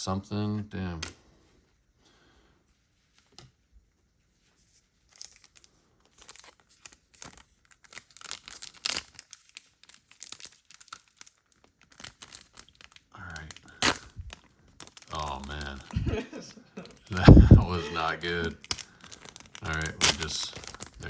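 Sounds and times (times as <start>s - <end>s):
foil wrapper tearing and crinkling: 5.0s - 16.0s, 16.9s - 21.0s.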